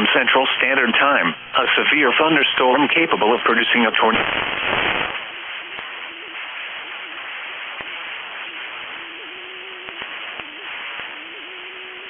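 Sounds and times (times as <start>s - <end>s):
radio static hiss: 0.0s - 12.0s
sharp radio clicks: 2.7s - 12.0s.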